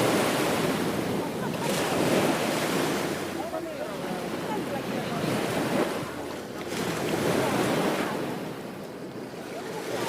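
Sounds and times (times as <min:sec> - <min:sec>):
ocean surf washing onto beach: 0:00.0 - 0:10.0.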